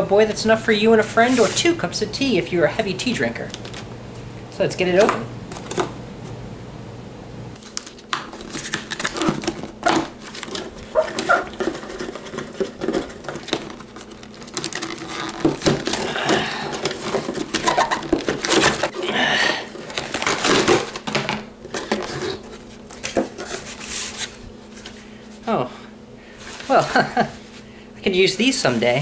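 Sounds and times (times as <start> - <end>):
cardboard box scraping and rustling: 16.7 - 19.0.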